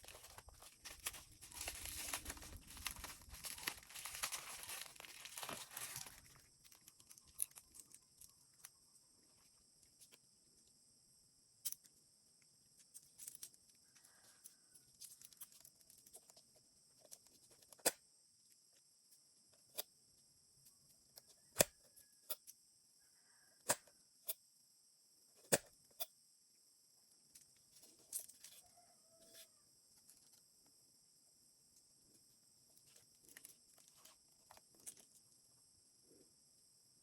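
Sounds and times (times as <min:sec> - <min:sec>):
small hard objects clicking: 0:00.1 - 0:08.8.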